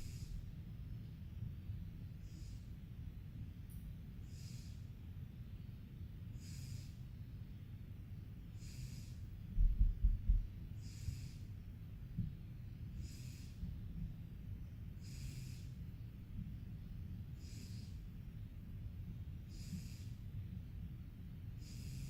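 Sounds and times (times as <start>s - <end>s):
cat snoring: 0.0s - 0.3s, 2.2s - 2.6s, 4.2s - 4.9s, 6.3s - 7.0s, 8.5s - 9.2s, 10.8s - 11.5s, 12.9s - 13.6s, 15.0s - 15.8s, 17.3s - 18.0s, 19.4s - 20.2s, 21.6s - 22.0s.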